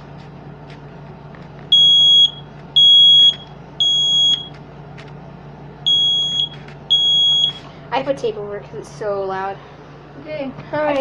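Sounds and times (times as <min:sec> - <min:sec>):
smoke alarm beeping: 0:01.7 - 0:04.6, 0:05.8 - 0:07.6.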